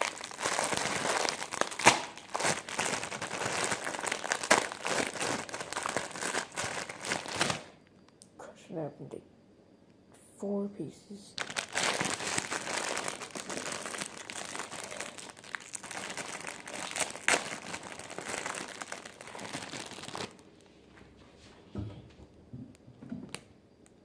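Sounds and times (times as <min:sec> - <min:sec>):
dry noodles crushed in plastic packet: 0:00.0 - 0:07.8, 0:11.4 - 0:20.5.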